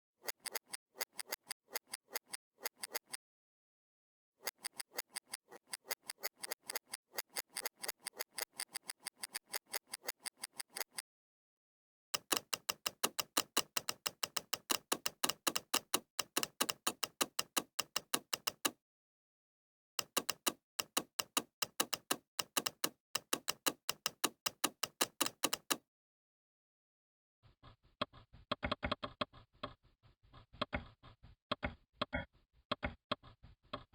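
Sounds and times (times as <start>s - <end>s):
rapid computer mouse clicks: 0.2s - 3.2s, 4.4s - 11.0s, 12.2s - 18.8s, 20.0s - 25.8s.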